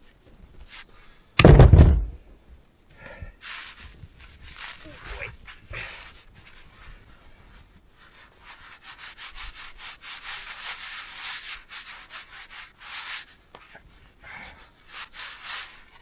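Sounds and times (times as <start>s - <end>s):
hand saw cutting log: 8.1s - 13.3s.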